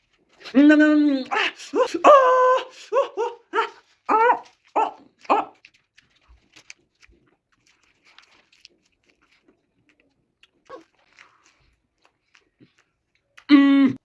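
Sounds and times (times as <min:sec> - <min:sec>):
dog whining yelps: 0:03.2 - 0:05.6.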